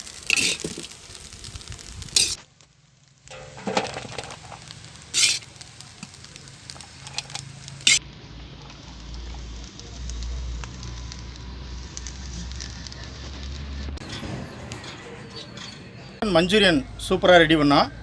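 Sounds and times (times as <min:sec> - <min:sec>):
faint sizzle: 0:00.0 - 0:14.1
metal spoon scraping a pan: 0:00.2 - 0:00.8, 0:02.2 - 0:02.4, 0:03.3 - 0:05.6, 0:07.0 - 0:08.0.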